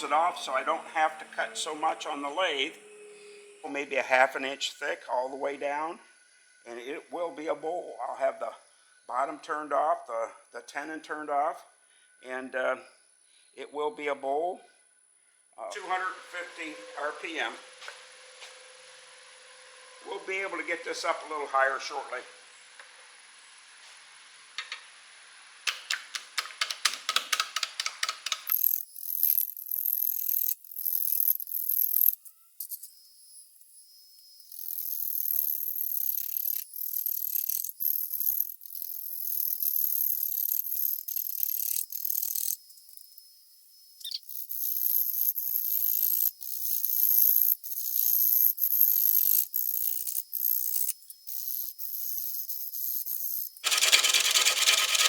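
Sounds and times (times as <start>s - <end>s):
hiss of wood shavings: 0.0s - 4.5s, 15.7s - 19.1s
lathe tool ticking on wood: 25.7s - 32.1s, 44.8s - 55.0s.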